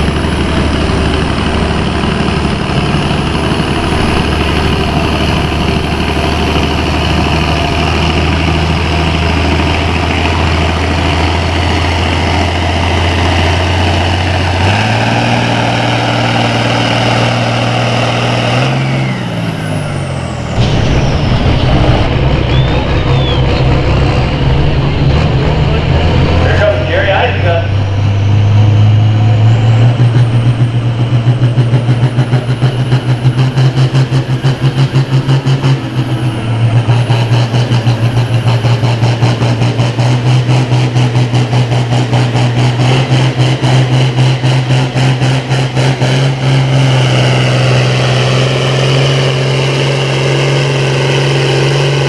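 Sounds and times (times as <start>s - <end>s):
tractor engine under heavy load: 0.0s - 52.0s.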